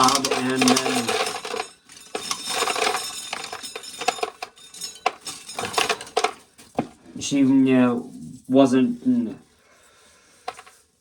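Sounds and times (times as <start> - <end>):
corn sheller stripping kernels: 0.0 - 6.4
corn kernels rattling into a pail: 0.0 - 6.8, 10.4 - 10.8.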